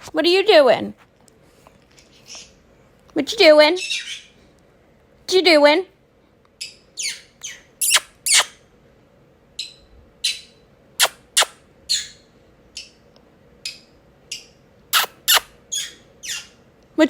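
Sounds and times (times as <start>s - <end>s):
parrot high kissy squeaks: 6.6s - 8.6s, 9.6s - 12.2s, 13.7s - 16.6s.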